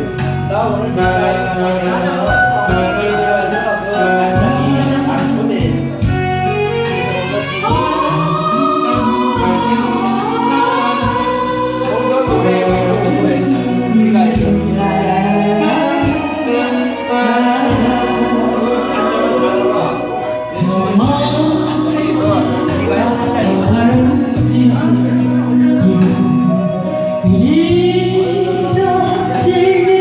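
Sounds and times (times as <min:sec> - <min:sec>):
ballad backing track: 0:00.0 - 0:30.0
person singing: 0:07.2 - 0:30.0.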